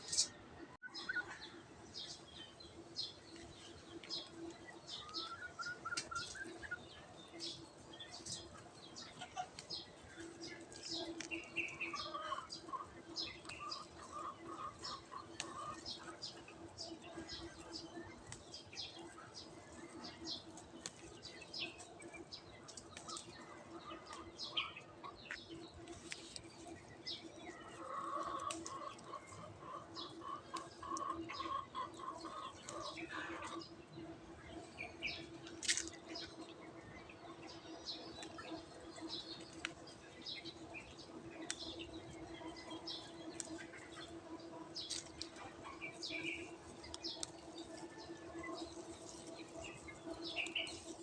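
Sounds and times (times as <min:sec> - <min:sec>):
small birds chirping: 0:00.0 - 0:51.0
chicken clucking: 0:01.0 - 0:26.0, 0:27.1 - 0:33.7.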